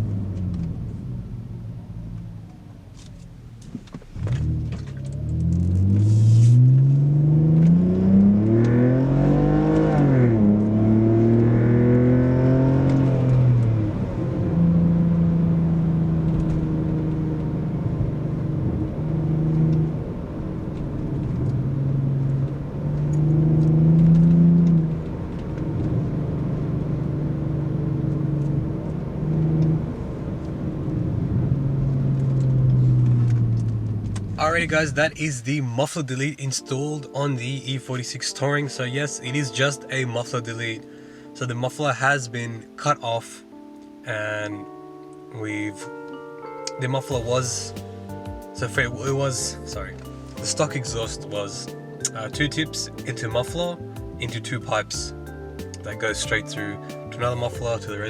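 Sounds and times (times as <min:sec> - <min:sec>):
car engine revving: 0:00.0 - 0:35.7.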